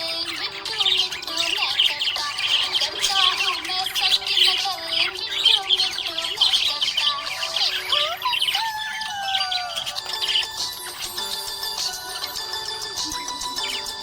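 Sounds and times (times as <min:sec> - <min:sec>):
budgerigars chirping and warbling: 0:00.0 - 0:14.0.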